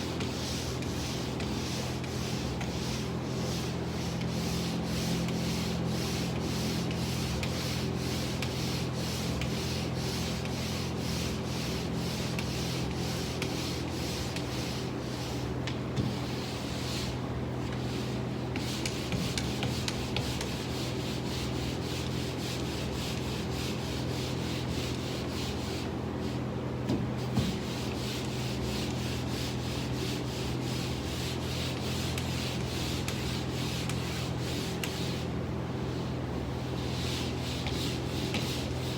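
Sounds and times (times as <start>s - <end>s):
steady low hum: 0.0s - 38.9s
sandpaper rubbing: 27.4s - 35.3s, 36.7s - 38.9s.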